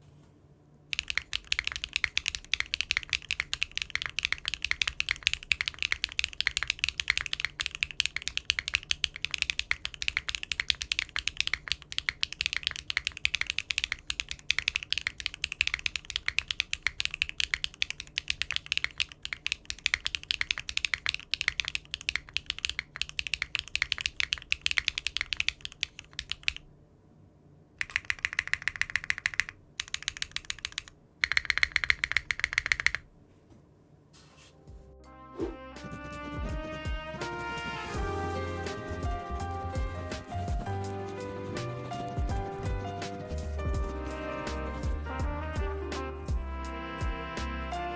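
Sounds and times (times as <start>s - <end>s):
mechanical keyboard typing: 0.9s - 26.7s, 27.8s - 33.1s.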